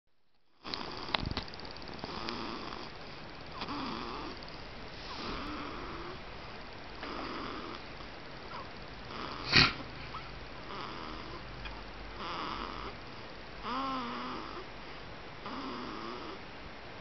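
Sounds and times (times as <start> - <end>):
baby snoring: 0.6 - 1.2, 2.0 - 3.0, 3.6 - 4.4, 5.0 - 6.2, 7.0 - 7.9, 8.5 - 11.5, 12.2 - 13.0, 13.6 - 14.7, 15.4 - 16.4.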